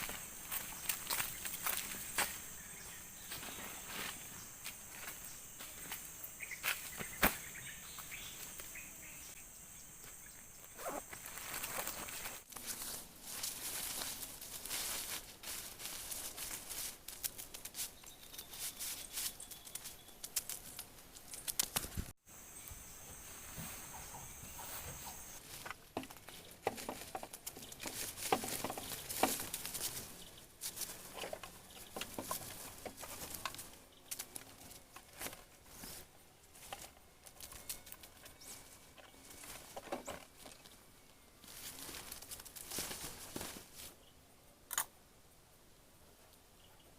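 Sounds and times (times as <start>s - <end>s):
high insect drone: 0.0s - 20.8s, 21.6s - 27.2s
rustling and tapping: 23.5s - 40.8s.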